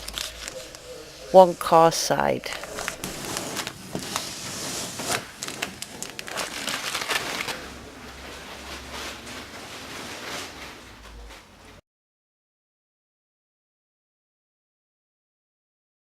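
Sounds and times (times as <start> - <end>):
paper crinkling and rustling: 0.0 - 11.8.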